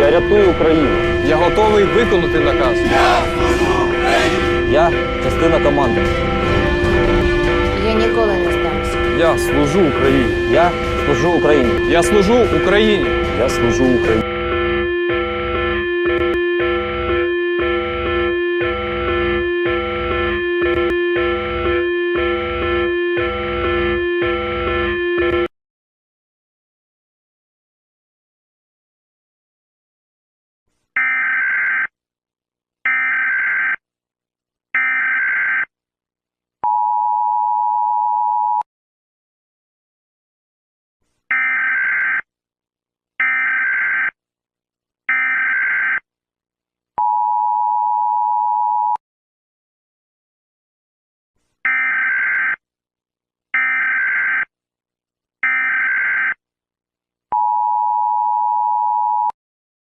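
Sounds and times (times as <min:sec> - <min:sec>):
two-tone attention signal: 0:00.0 - 0:25.5.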